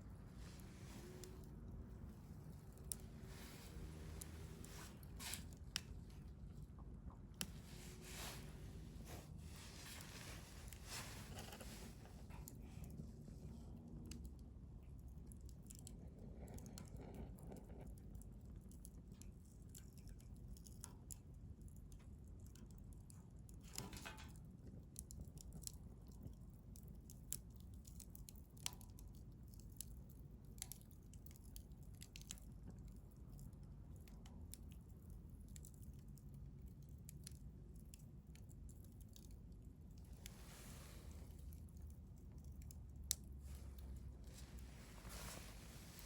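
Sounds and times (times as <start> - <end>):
wood fire crackling and popping: 0.4 - 46.0.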